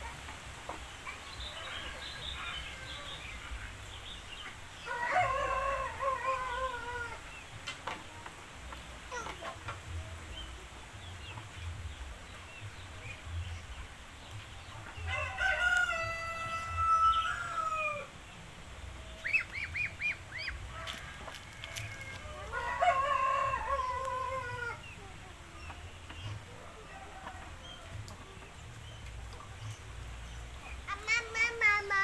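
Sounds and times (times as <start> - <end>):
rooster crowing: 4.9 - 7.2, 15.1 - 18.1, 20.7 - 24.8.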